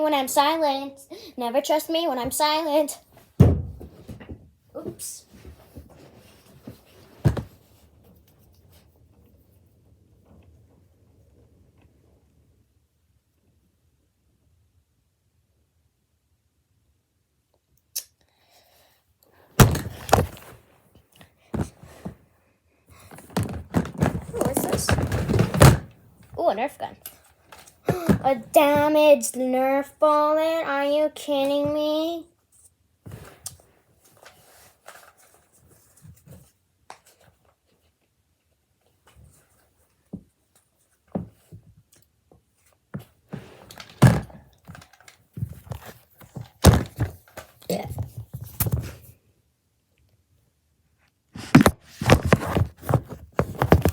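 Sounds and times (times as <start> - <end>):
objects thudding as set down: 6.6 - 7.6, 19.6 - 20.6, 21.5 - 22.2, 23.0 - 26.0, 27.5 - 28.5, 43.4 - 49.0, 51.4 - 53.9
short thumps and knocks: 19.6 - 20.5, 21.5 - 22.2, 23.1 - 25.9, 27.9 - 28.9, 45.4 - 47.3, 51.4 - 53.9
rustling: 22.9 - 26.5, 51.4 - 53.9.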